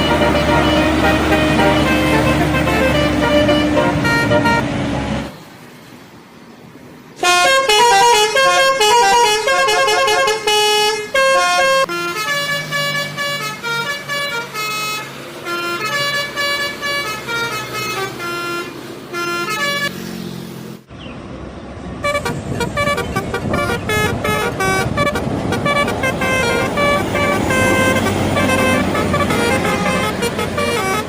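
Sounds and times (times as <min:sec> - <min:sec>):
multi-tone musical bus horn: 0:00.0 - 0:05.3, 0:07.2 - 0:20.0, 0:22.0 - 0:31.0
engine running: 0:00.0 - 0:05.4, 0:20.1 - 0:31.0
road noise: 0:00.0 - 0:31.0.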